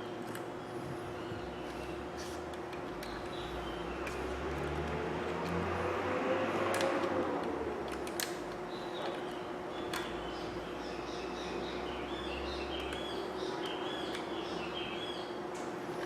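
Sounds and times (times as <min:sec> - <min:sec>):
steady hum: 0:00.0 - 0:16.0
birds chirping: 0:00.6 - 0:02.2, 0:08.6 - 0:15.4
small parts clicking: 0:06.6 - 0:09.3.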